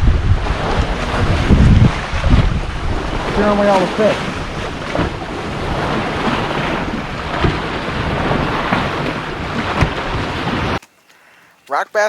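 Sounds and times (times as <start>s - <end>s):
wind buffeting microphone: 0.0s - 10.8s
water noise: 0.0s - 12.0s
sharp knocks: 6.8s - 7.8s, 8.6s - 10.4s.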